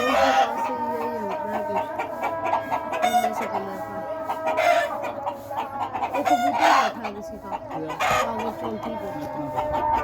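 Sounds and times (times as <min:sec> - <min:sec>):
birds calling: 0:00.0 - 0:10.0.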